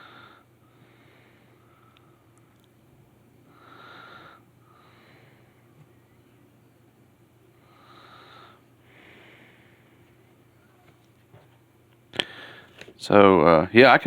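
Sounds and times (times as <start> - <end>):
person breathing softly: 0.0 - 2.4, 3.5 - 5.8, 7.5 - 10.2, 12.2 - 12.8
faint steady hum: 0.0 - 14.0.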